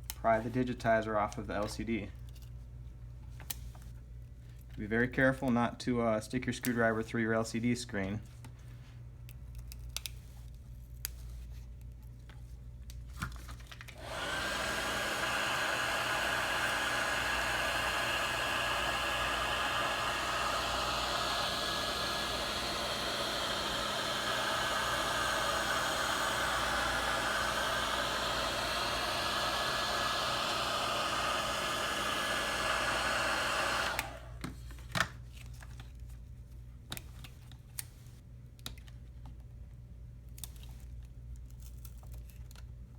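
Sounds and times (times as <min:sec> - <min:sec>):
heat gun blowing: 0:14.0 - 0:34.4.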